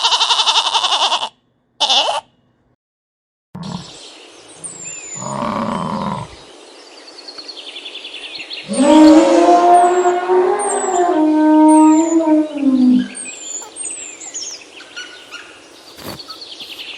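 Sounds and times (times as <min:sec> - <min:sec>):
birds chirping: 0:03.6 - 0:16.9
large animal roaring: 0:08.6 - 0:13.4
dog howling: 0:08.7 - 0:13.8.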